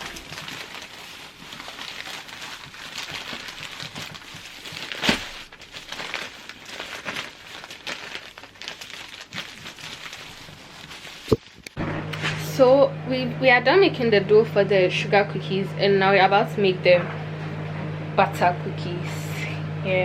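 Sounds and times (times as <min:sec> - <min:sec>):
plastic wrap crinkling: 0:00.0 - 0:11.8.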